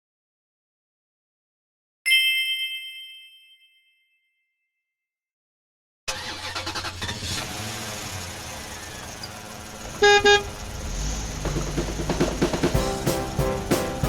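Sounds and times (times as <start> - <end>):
bright chime ringing: 2.1 - 4.4
rattling mechanical running noise: 6.2 - 13.7.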